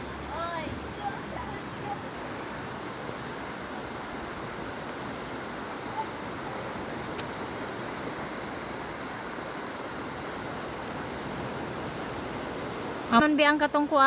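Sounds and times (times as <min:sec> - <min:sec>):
surf washing on stony shore: 0:00.0 - 0:14.0.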